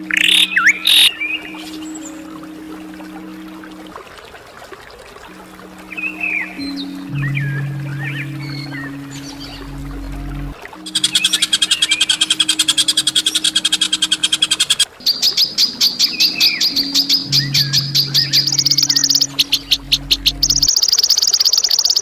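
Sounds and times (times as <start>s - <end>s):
high repeated bird notes: 0.0s - 2.1s, 6.0s - 22.0s
low steady drone: 0.0s - 20.8s
songbird rattling trill: 10.9s - 22.0s.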